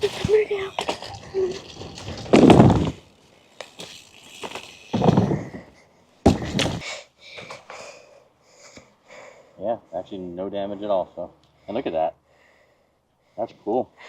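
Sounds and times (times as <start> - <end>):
bike wheels thumping ground: 0.0 - 8.0.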